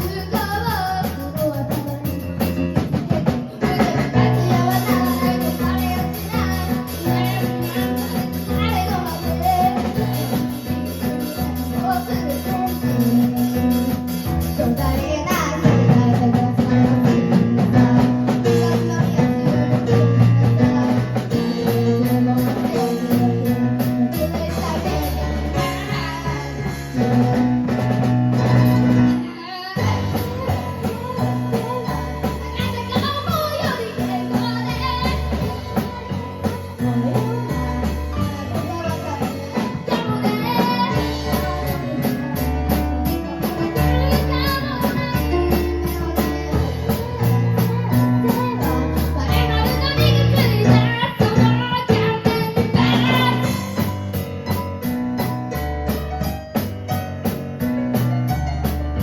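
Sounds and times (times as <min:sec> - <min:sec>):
person singing: 0:00.0 - 0:54.1
drum kit beat: 0:00.0 - 0:59.0
keyboard music: 0:00.0 - 0:59.0.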